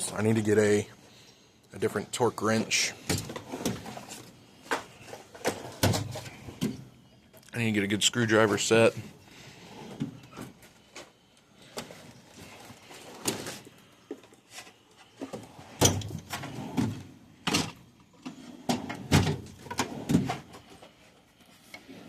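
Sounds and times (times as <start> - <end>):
toolbox drawers and tools clunking: 2.5 - 6.9, 9.8 - 21.1.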